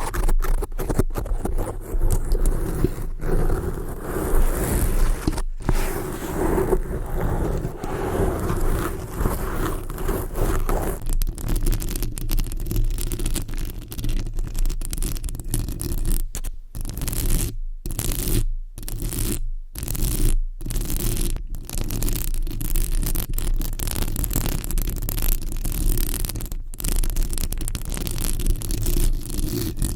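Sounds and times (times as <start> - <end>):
fingernails scratching a surface: 0.0 - 11.8, 26.1 - 29.9.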